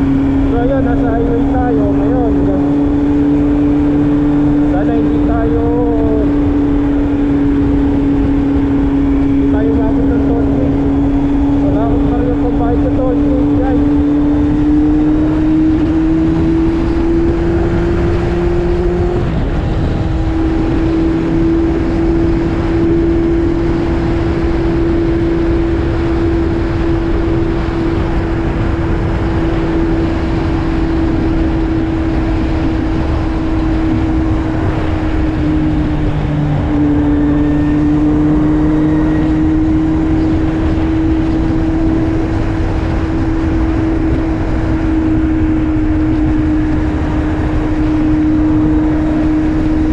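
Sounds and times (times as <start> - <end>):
motorcycle engine: 0.0 - 49.9
wind and road noise: 0.0 - 49.9.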